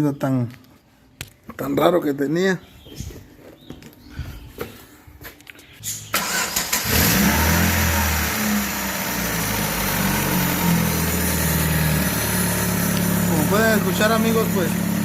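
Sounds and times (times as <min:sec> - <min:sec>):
car engine revving and idling: 0:06.2 - 0:15.0.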